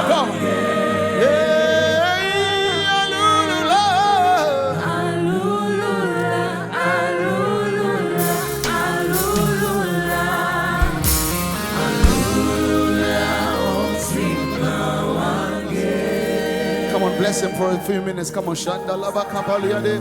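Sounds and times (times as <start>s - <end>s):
backing choir harmonies: 0.0s - 20.0s
lead singer with vibrato: 0.0s - 20.0s
bass: 8.2s - 19.2s
band playing: 8.2s - 19.9s
cymbals: 8.2s - 20.0s.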